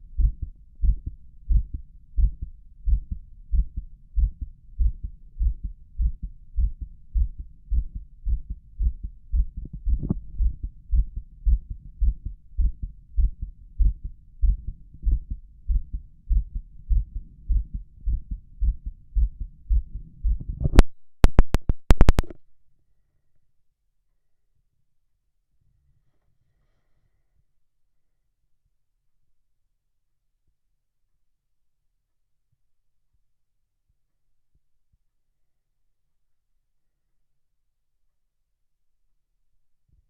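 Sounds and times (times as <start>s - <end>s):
heartbeat through stethoscope: 0.0s - 22.4s
sharp clicks and knocks: 20.6s - 22.4s.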